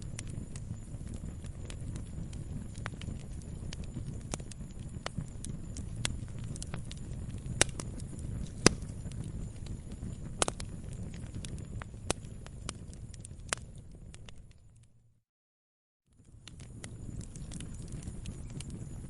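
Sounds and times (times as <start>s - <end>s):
log fire crackling: 0.0s - 15.0s, 16.1s - 19.0s.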